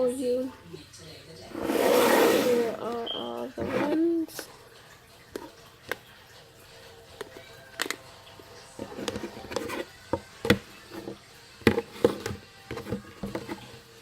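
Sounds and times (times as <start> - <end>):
rustling and scraping: 1.5 - 4.2, 8.8 - 14.0.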